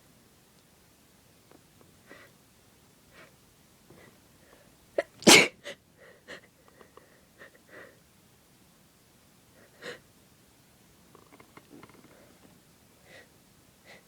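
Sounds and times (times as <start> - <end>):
faint breaths: 3.1 - 4.8, 11.7 - 14.0
person sneezing: 5.0 - 5.7.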